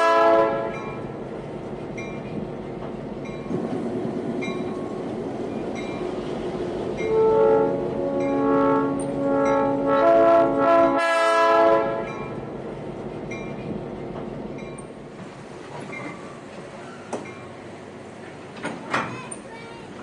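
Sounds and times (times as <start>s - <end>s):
locomotive air horn blasts: 0.0s - 0.8s, 7.0s - 12.2s.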